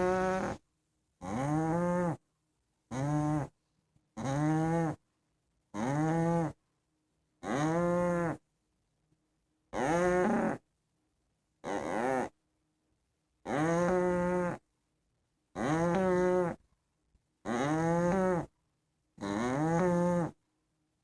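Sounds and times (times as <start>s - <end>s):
loud droning snoring: 0.0s - 0.6s, 1.2s - 2.2s, 2.9s - 3.5s, 4.2s - 5.0s, 5.8s - 6.6s, 7.4s - 8.4s, 9.8s - 10.6s, 11.6s - 12.3s, 13.5s - 14.6s, 15.6s - 16.6s, 17.4s - 18.5s, 19.2s - 20.4s.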